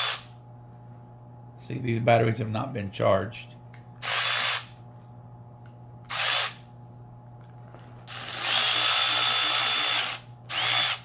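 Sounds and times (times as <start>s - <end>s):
cordless ratchet motor whining: 4.0s - 4.7s, 6.1s - 6.6s, 8.1s - 11.0s.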